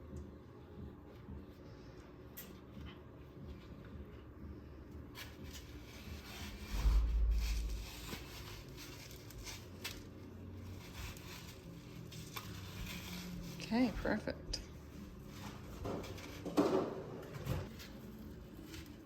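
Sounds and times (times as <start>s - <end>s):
low dull thump: 6.7s - 8.3s.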